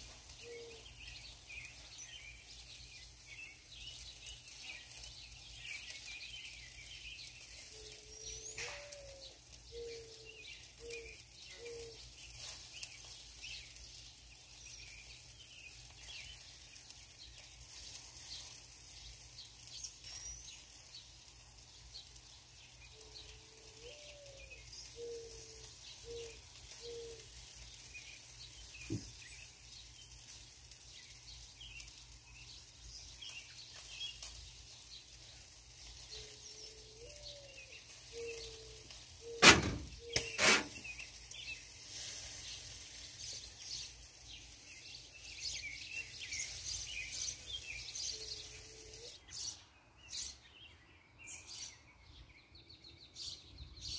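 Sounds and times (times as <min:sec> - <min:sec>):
small birds chirping: 0:00.0 - 0:53.9
dove cooing: 0:08.1 - 0:12.0, 0:23.6 - 0:27.2, 0:36.2 - 0:40.8
sharp knocks: 0:39.4 - 0:40.7.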